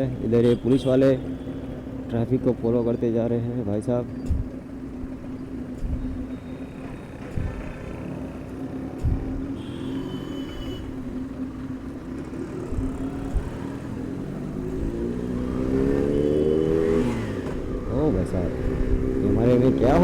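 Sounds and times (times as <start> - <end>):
motorcycle engine accelerating: 4.3 - 20.0.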